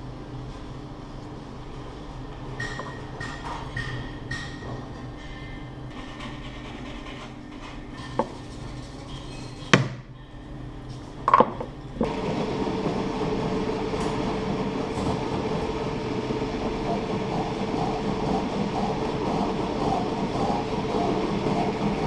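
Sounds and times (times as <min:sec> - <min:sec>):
machine humming: 0:10.2 - 0:22.0.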